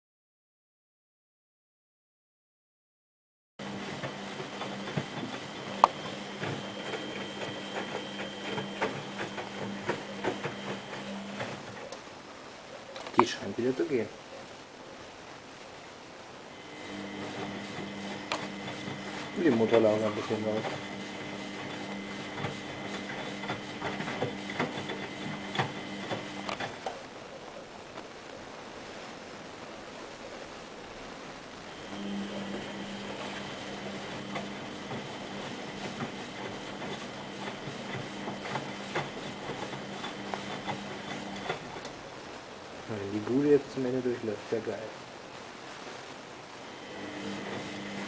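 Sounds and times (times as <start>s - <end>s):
washing machine motor hum: 3.6s - 14.1s, 16.5s - 27.4s, 31.6s - 44.8s, 46.6s - 48.0s.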